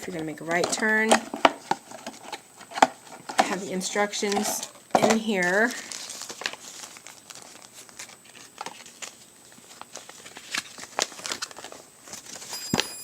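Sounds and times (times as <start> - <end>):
packaging crinkling and rustling: 4.2 - 13.0.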